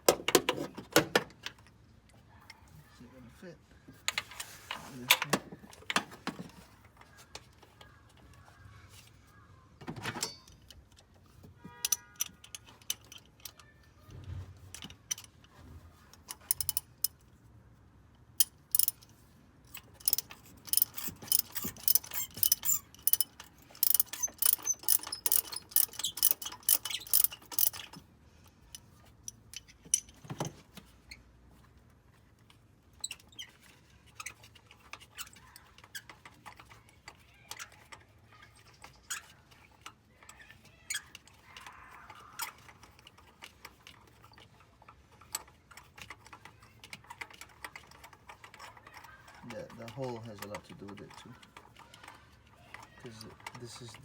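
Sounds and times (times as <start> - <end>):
hand tools clicking and knocking: 0.0 - 1.8, 3.9 - 8.6, 9.8 - 13.8, 16.1 - 17.2, 18.4 - 30.9, 32.4 - 54.0
ratchet wrench clicking: 16.2 - 17.2, 18.4 - 19.1, 19.7 - 28.0.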